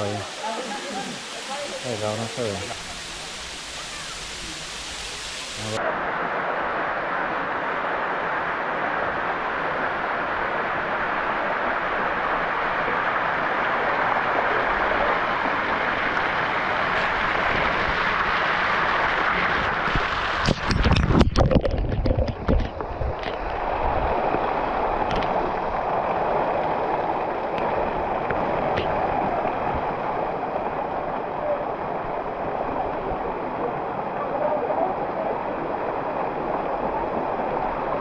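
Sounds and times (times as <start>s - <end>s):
waterfall roaring: 0.0s - 21.6s.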